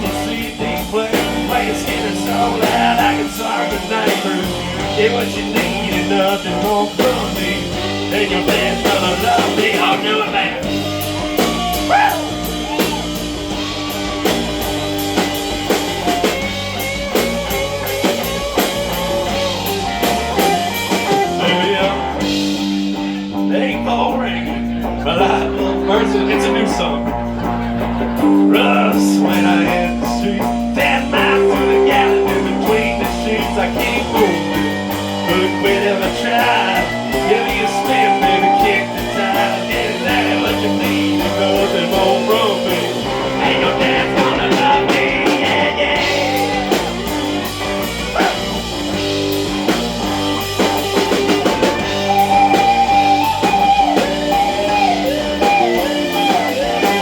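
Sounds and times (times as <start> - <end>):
bass guitar: 0.0 - 57.0
rock band playing: 0.0 - 57.0
electric guitar solo: 10.7 - 22.2, 45.7 - 57.0.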